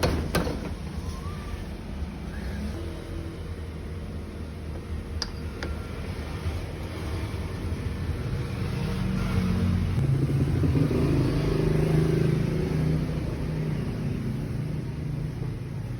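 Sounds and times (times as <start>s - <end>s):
motorcycle engine revving: 7.0s - 15.1s.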